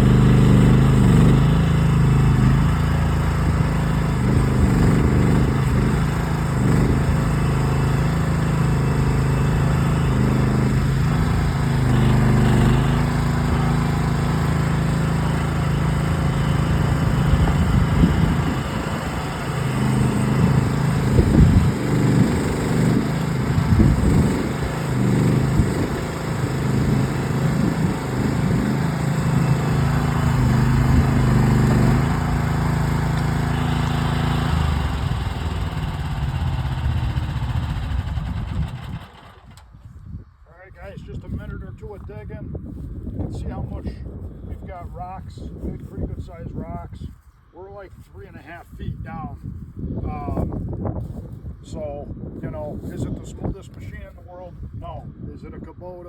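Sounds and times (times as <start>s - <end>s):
small engine under digging load: 0.0s - 40.2s.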